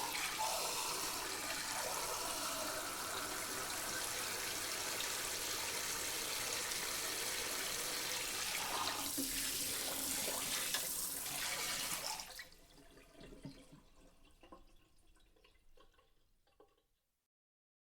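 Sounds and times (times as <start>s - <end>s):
dish sprayer spraying water: 0.0s - 12.2s
water dripping: 12.2s - 16.9s.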